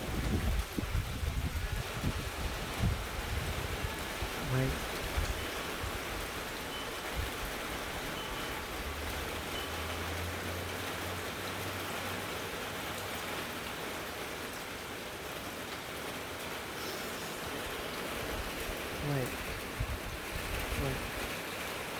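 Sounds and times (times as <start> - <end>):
wind gust rumbling: 0.0 - 9.5, 16.7 - 21.4
heavy rain hissing: 0.0 - 21.9.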